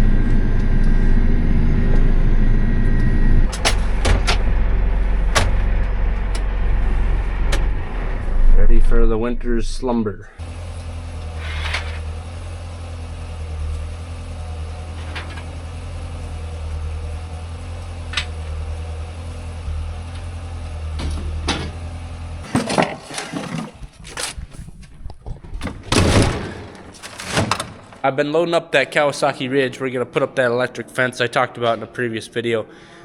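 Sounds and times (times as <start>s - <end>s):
vehicle engine humming: 0.0s - 25.9s.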